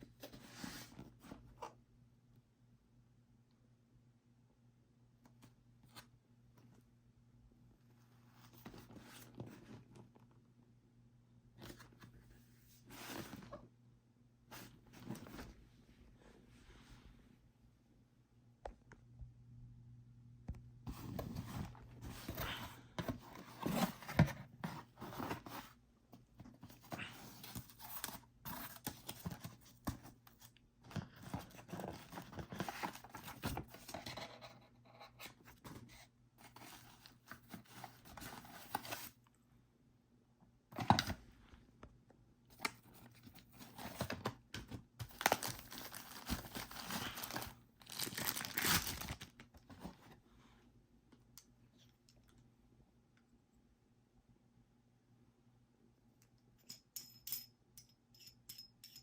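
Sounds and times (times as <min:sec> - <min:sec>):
packaging tearing and crinkling: 0:45.1 - 0:49.4.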